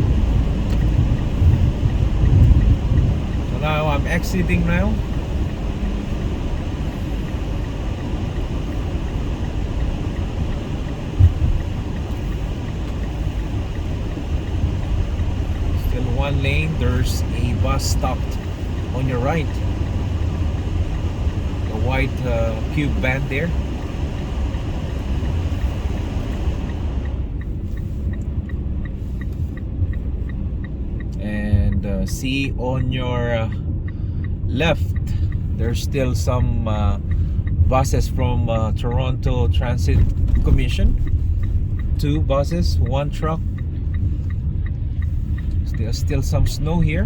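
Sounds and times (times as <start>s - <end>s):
car road and engine rumble: 0.0s - 47.0s
turn signal relay ticking: 0.0s - 47.0s
short low thump: 11.2s - 11.7s.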